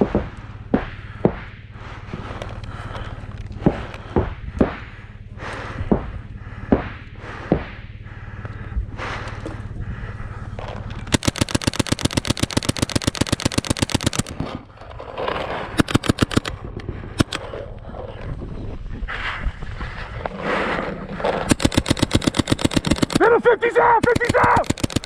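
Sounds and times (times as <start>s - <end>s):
paintball marker firing shots: 11.0s - 14.6s, 15.8s - 17.6s, 21.5s - 23.3s, 24.0s - 25.0s.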